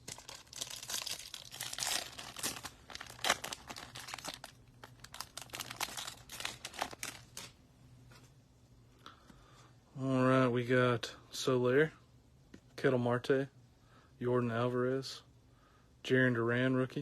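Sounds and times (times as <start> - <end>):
foil wrapper tearing and crinkling: 0.0 - 7.5.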